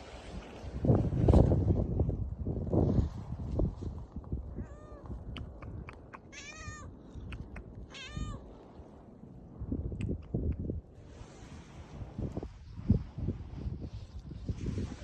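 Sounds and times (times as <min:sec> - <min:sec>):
wind buffeting microphone: 0:00.0 - 0:15.0
cat meowing: 0:04.6 - 0:05.2, 0:06.3 - 0:07.0, 0:07.8 - 0:08.5.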